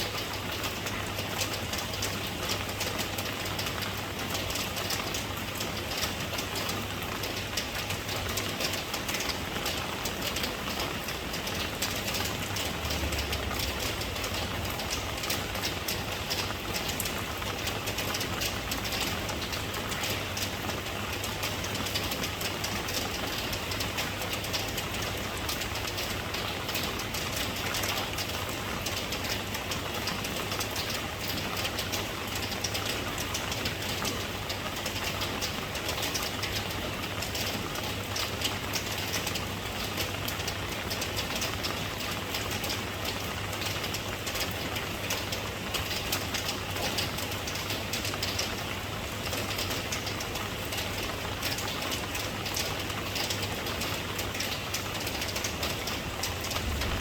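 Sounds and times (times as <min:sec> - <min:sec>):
steady rain falling: 0:00.0 - 0:57.0
constant low hum: 0:56.3 - 0:57.0.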